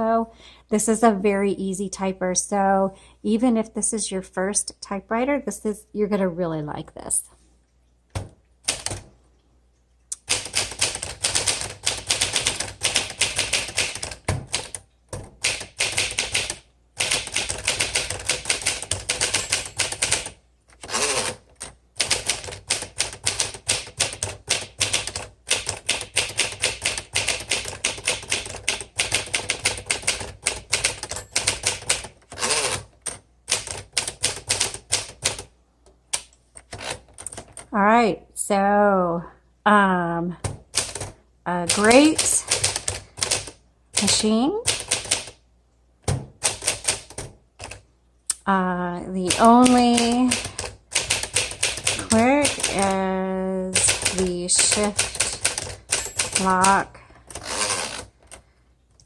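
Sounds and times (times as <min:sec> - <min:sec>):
manual typewriter keystrokes: 0:08.6 - 0:09.1, 0:10.2 - 0:35.5, 0:36.1 - 0:37.7, 0:40.4 - 0:45.4, 0:46.0 - 0:47.8, 0:49.2 - 0:53.0, 0:53.7 - 0:58.4.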